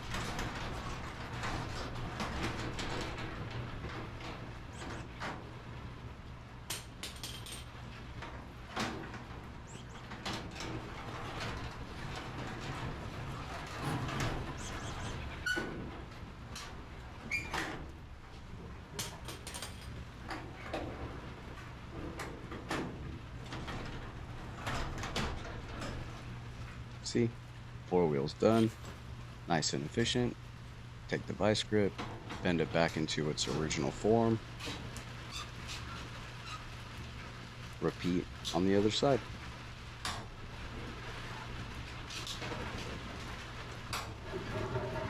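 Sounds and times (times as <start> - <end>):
steady low hum: 0.0 - 35.0
metallic clicks and knocks: 6.7 - 7.8, 19.0 - 20.4.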